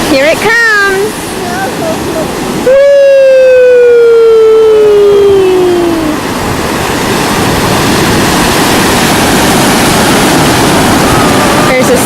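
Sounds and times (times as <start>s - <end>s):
ocean surf washing up: 0.0s - 12.0s
person shouting wheee: 2.6s - 6.2s.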